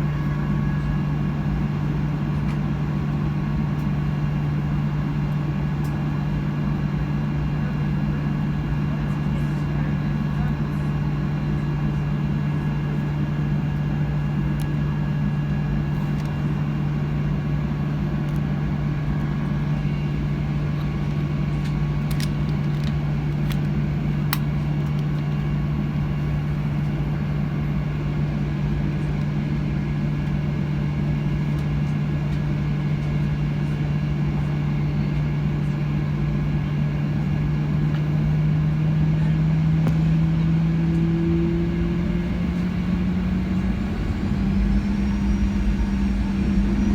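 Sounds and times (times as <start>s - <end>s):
jet engine drone in cabin: 0.0s - 46.9s
faint whining tones: 41.2s - 46.9s.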